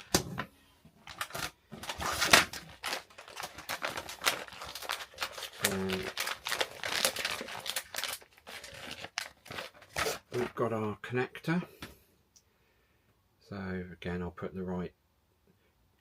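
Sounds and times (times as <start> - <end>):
hands handling cables and tools: 0.0 - 10.6
plastic bags crinkling: 1.0 - 10.6.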